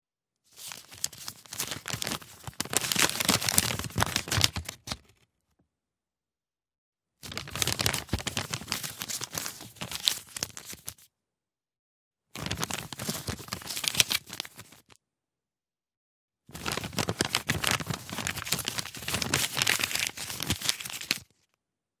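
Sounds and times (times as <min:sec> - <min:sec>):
paper leaflet crackling and rustling: 0:00.5 - 0:05.2, 0:07.2 - 0:11.1, 0:12.4 - 0:14.9, 0:16.6 - 0:21.3.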